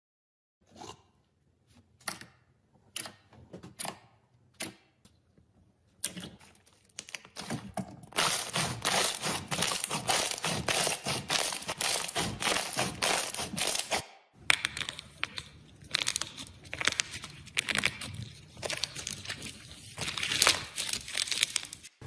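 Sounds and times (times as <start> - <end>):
slime popping and crackling: 8.1 - 19.4, 20.0 - 21.9.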